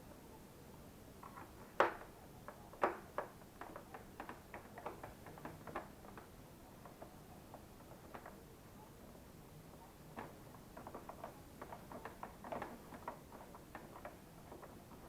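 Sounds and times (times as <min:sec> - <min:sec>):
plastic parts clicking and knocking: 0:01.2 - 0:08.4, 0:10.1 - 0:15.0.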